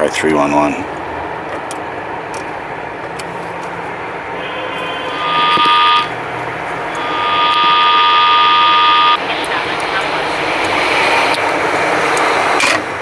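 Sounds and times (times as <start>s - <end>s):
city street traffic: 0.0s - 13.0s
loud two-note tone: 4.4s - 9.2s.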